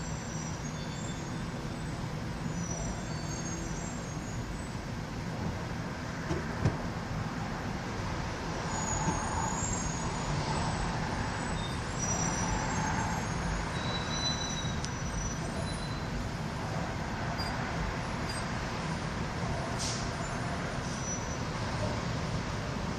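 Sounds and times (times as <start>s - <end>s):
wheels squealing: 0.0s - 4.8s, 8.6s - 16.5s, 19.8s - 22.0s.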